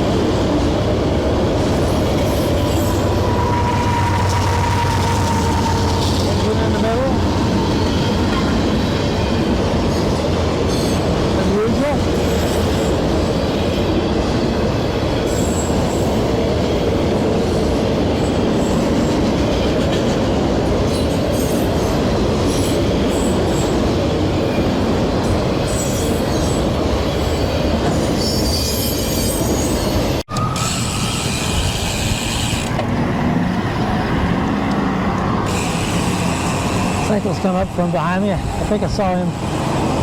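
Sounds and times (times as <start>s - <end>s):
freight train rumble and clatter: 0.0s - 40.0s
high-pitched wheel squeals: 2.7s - 6.5s, 28.2s - 32.8s.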